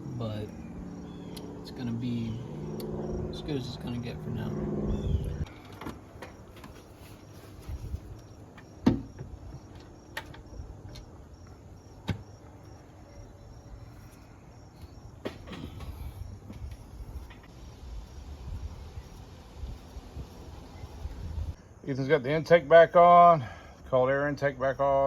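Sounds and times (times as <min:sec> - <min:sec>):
cricket chirping: 0:00.0 - 0:25.0
low rumble: 0:02.3 - 0:05.5.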